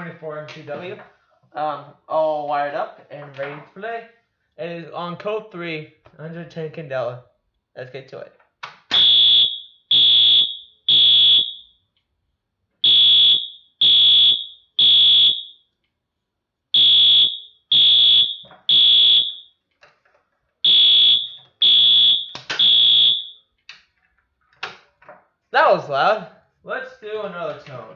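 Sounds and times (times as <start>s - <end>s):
buzzy electronic alarm horn: 9.0s - 11.7s, 12.8s - 15.6s, 16.8s - 19.5s, 20.7s - 23.4s.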